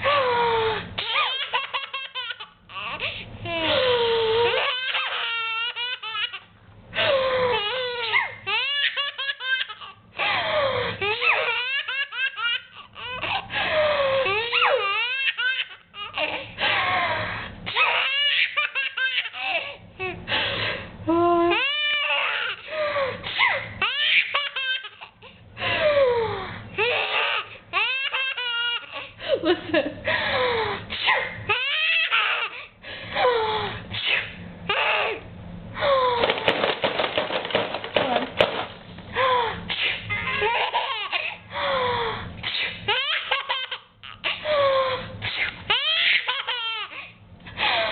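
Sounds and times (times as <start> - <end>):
baby belly-laughing: 1.0 - 6.5, 7.5 - 13.6, 14.2 - 16.8, 17.7 - 20.2, 21.5 - 22.7, 23.4 - 25.3, 26.8 - 29.1, 31.5 - 32.7, 34.7 - 35.2, 39.7 - 41.4, 42.6 - 44.6, 45.2 - 47.9
breathy rushes: 41.4 - 42.9.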